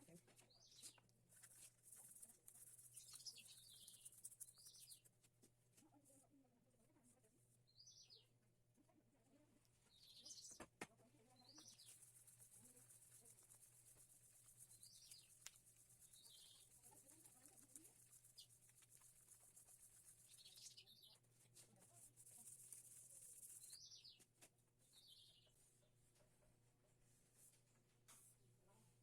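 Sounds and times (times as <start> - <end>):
faint bird chirps: 0.4 - 1.1, 1.9 - 5.1, 7.6 - 8.4, 9.8 - 25.9.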